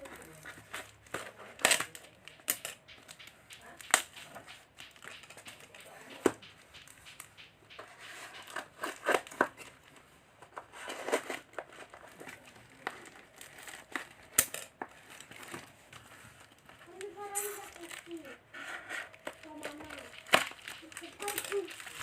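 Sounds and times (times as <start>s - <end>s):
plastic packaging crinkling: 0.0s - 7.5s, 10.9s - 18.3s, 19.1s - 22.0s.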